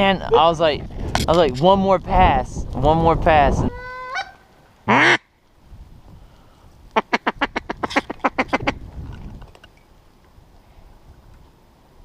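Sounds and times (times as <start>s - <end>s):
duck call quacks: 3.7s - 5.2s.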